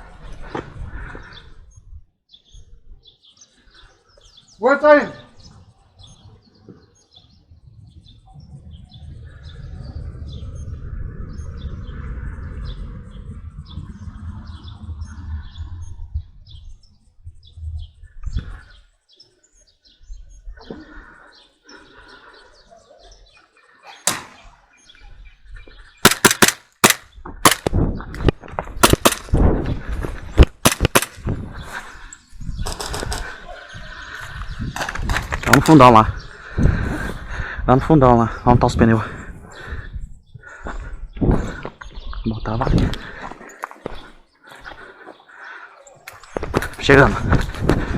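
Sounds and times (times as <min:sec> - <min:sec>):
birds chirping: 0:00.0 - 0:47.9
low rumbling noise: 0:07.7 - 0:18.6
airsoft gun shots: 0:24.0 - 0:24.4, 0:26.0 - 0:27.7, 0:28.8 - 0:29.3, 0:30.6 - 0:31.2.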